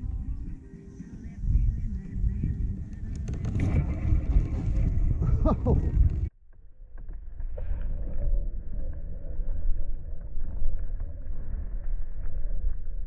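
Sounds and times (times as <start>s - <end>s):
wind buffeting microphone: 0.0s - 6.3s.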